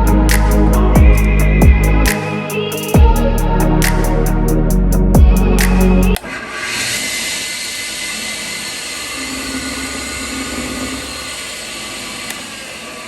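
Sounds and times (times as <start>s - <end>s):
machine whirring: 5.1s - 13.0s.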